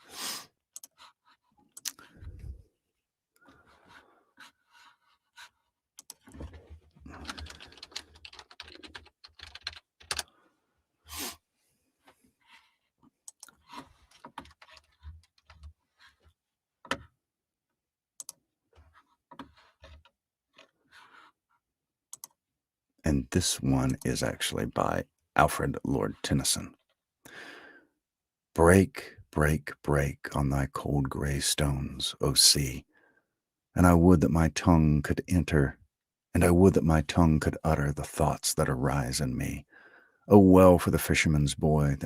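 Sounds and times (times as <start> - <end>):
typing on computer keyboard: 7.1 - 10.3, 13.3 - 15.7.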